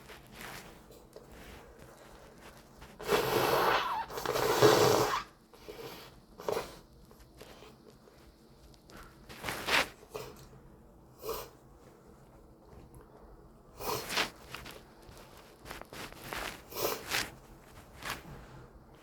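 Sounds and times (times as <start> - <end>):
person blowing nose: 3.0 - 6.7.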